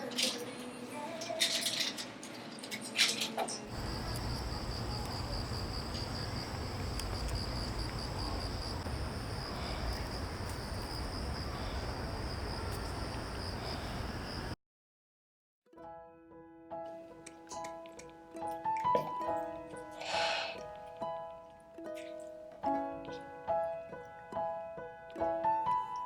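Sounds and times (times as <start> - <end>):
crickets chirping: 3.7 - 14.6
low background rumble: 3.7 - 14.6.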